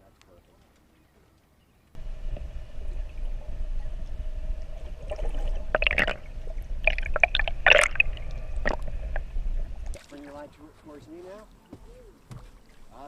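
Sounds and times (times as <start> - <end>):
steady low rumble: 2.0 - 10.0
water gurgling and splashing: 2.0 - 10.4.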